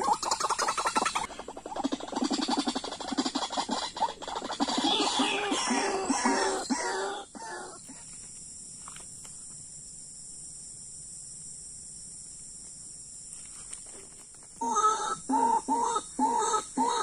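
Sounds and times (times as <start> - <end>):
bird calls: 0.0 - 7.9
high-pitched insect drone: 0.0 - 12.4.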